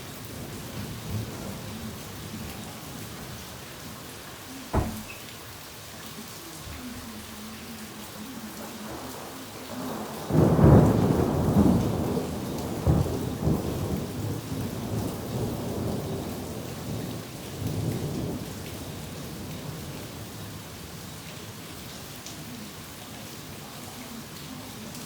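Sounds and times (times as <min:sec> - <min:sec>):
steady rain: 0:00.0 - 0:25.0
thunder clap and rumbling: 0:08.6 - 0:18.6.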